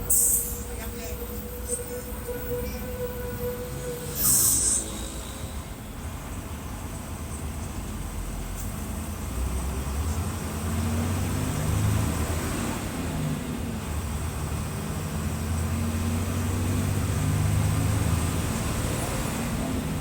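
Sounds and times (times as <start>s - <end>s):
bus diesel engine revving: 8.0s - 20.0s.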